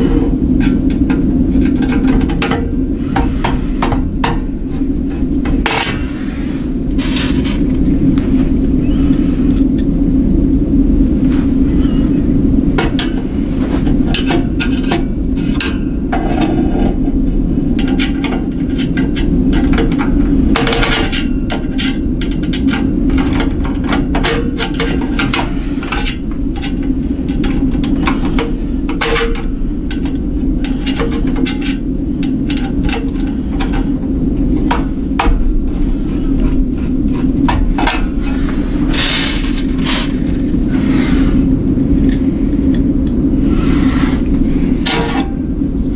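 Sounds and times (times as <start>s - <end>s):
metal clicks and knocks: 0.0s - 6.1s, 17.7s - 40.6s
steady low hum: 0.0s - 45.9s.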